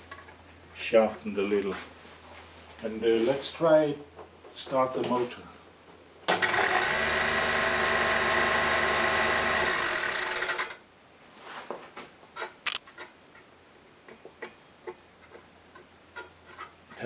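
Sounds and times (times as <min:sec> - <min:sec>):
table saw motor humming: 0:06.4 - 0:10.7.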